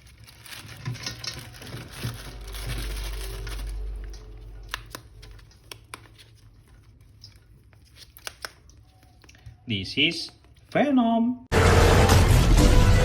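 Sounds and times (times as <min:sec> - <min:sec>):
plastic packaging crinkling: 0:00.0 - 0:09.7
low handling rumble: 0:01.4 - 0:05.6.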